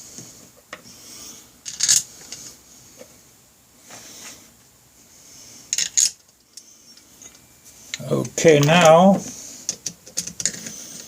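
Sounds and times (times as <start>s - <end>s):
small metal parts clicking: 1.6s - 2.4s, 5.7s - 6.6s, 9.6s - 11.0s.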